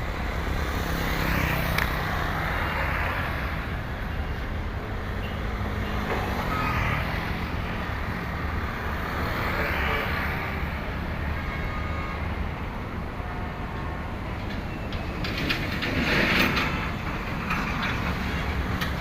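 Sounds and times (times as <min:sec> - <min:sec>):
heavy vehicle engines rumbling: 0:00.0 - 0:19.0
vehicles passing: 0:00.0 - 0:19.0.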